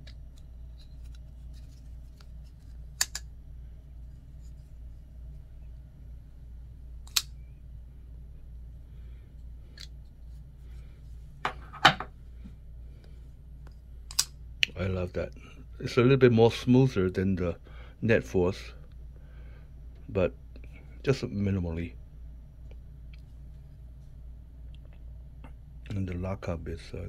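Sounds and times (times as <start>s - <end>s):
steady low hum: 0.0s - 27.0s
folding knife metallic clicks: 7.1s - 7.3s.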